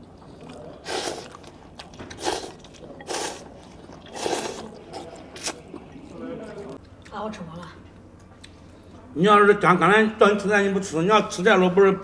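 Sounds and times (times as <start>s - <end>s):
person slurping noodles: 0.8s - 5.6s.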